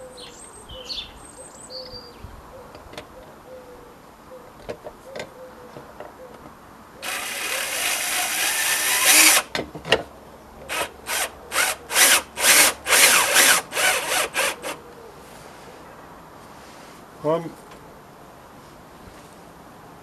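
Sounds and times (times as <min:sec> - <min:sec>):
power drill driving screws: 0:07.0 - 0:09.5, 0:10.7 - 0:14.8.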